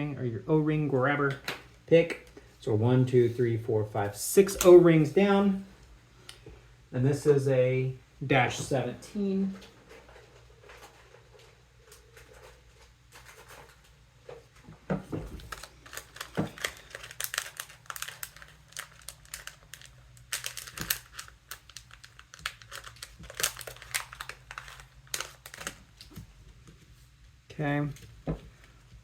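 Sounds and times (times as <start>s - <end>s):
plastic parts crinkling and clicking: 9.6s - 26.3s.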